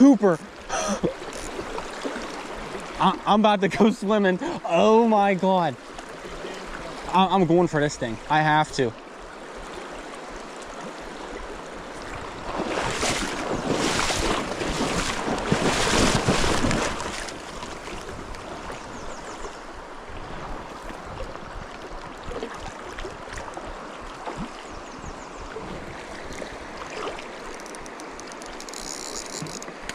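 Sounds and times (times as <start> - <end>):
mountain stream rushing: 0.0 - 25.0
person wading splashing: 12.0 - 19.6, 25.8 - 27.5.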